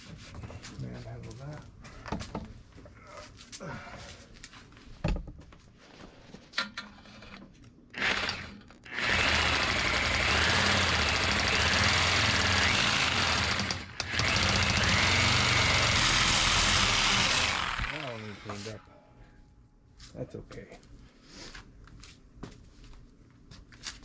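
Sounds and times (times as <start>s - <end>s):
reciprocating saw cutting metal tubing: 8.0s - 18.9s.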